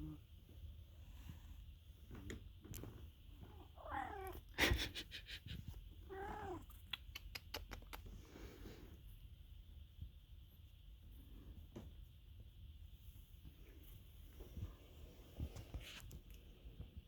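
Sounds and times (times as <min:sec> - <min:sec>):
cat meowing: 0:03.8 - 0:04.4, 0:06.1 - 0:06.7.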